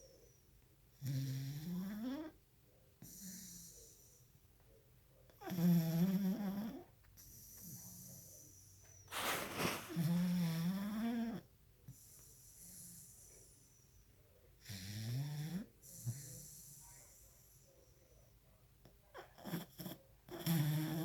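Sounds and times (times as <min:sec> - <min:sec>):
dog snoring: 0:01.0 - 0:02.3, 0:14.6 - 0:16.8
dog breathing: 0:09.1 - 0:10.4.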